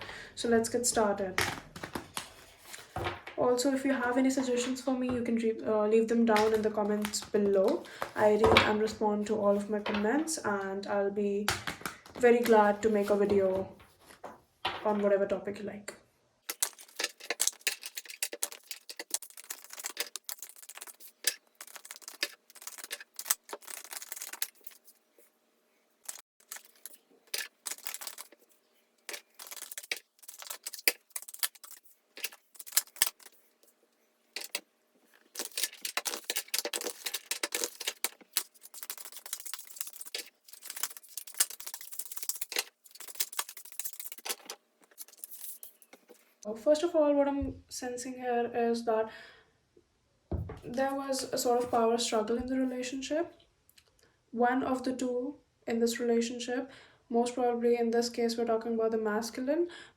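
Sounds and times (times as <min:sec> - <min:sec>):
cards being shuffled by hand: 0:01.4 - 0:03.3, 0:06.4 - 0:08.4, 0:16.5 - 0:25.0, 0:26.0 - 0:33.4, 0:34.4 - 0:46.3.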